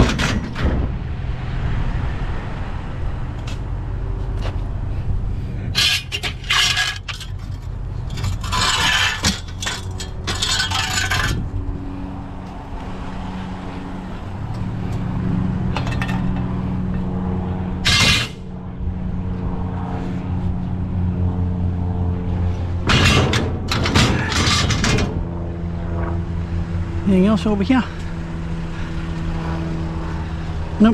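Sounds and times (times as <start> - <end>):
junk scraping and rattling: 0.0 - 1.2, 3.3 - 12.6, 14.5 - 18.7, 22.1 - 26.2.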